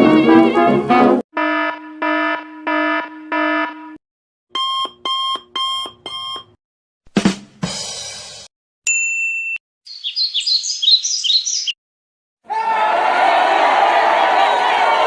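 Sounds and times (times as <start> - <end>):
electronic alarm beeping: 1.4 - 6.6.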